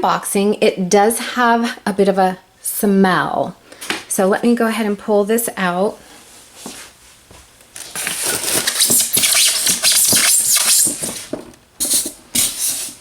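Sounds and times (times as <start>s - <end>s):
box packaging rustling: 7.8s - 13.0s.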